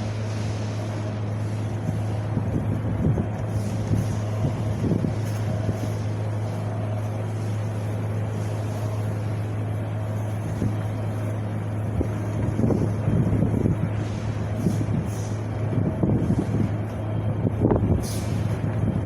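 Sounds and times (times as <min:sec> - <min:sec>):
wind on microphone: 0:01.1 - 0:07.0, 0:10.3 - 0:19.0.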